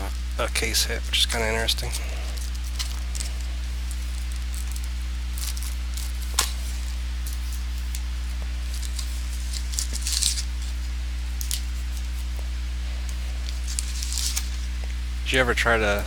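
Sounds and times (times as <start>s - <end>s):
low electrical hum: 0.0s - 16.0s
cards and packaging clicks: 0.6s - 12.4s.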